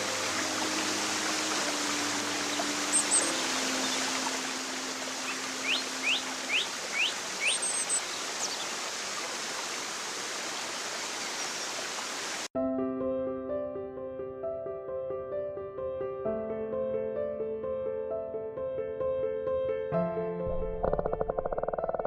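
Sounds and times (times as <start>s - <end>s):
piano music: 0.0s - 6.6s, 12.6s - 22.0s
running water: 0.0s - 12.5s
bird chirping: 2.4s - 4.2s, 5.2s - 8.8s.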